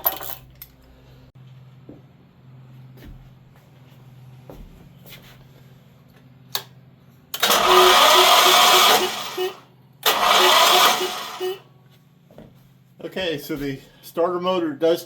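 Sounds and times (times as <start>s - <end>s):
electric starter motor cranking engine: 7.3s - 11.6s.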